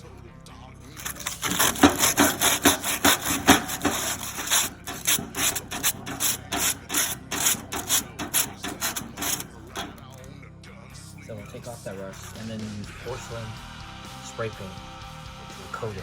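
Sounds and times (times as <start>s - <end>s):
foil scrubbing metal grate: 0.9s - 10.2s, 11.7s - 12.6s.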